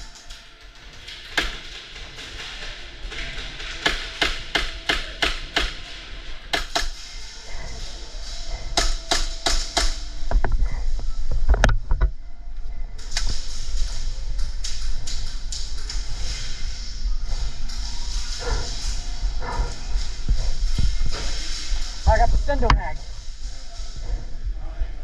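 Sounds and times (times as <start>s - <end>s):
airsoft guns firing: 0.9s - 7.2s, 8.8s - 10.1s.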